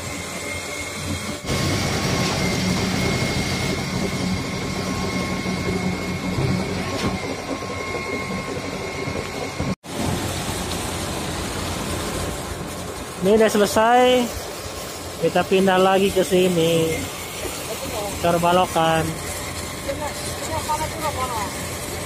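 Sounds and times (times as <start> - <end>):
concrete pump rumbling with whine: 0.0 - 22.0.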